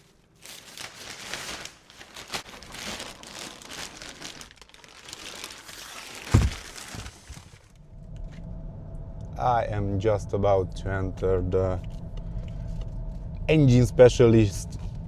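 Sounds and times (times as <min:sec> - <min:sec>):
crinkling rustling handling noise: 0:00.0 - 0:07.8.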